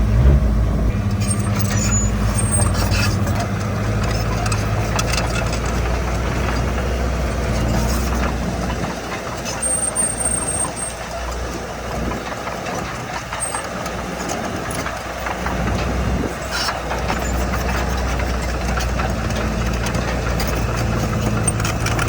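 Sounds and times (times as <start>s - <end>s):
clatter: 0.0s - 22.0s
heavy diesel engine running: 0.0s - 22.0s.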